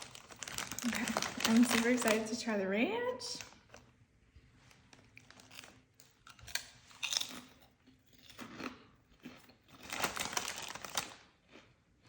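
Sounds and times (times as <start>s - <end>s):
person chewing crunchy chips: 0.0s - 2.1s, 4.6s - 12.0s.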